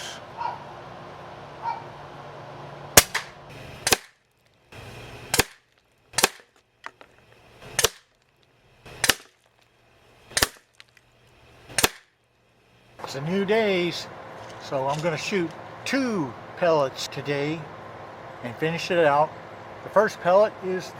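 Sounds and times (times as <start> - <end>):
suppressed air rifle shots: 3.0 - 4.2, 5.3 - 6.5, 7.6 - 8.1, 8.9 - 9.4, 10.3 - 10.7, 11.7 - 12.1.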